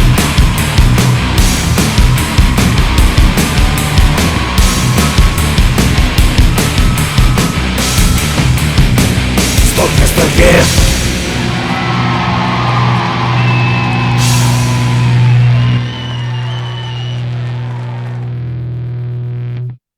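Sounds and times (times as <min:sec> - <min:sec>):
loud drum hits: 0:00.0 - 0:12.9, 0:13.9 - 0:15.5
steady low note: 0:00.0 - 0:19.6.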